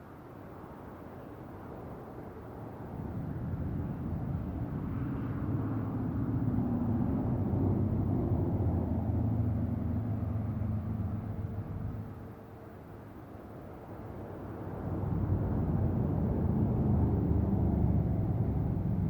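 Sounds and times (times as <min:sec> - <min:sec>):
vehicle driving past: 0:05.2 - 0:12.1, 0:15.0 - 0:19.0.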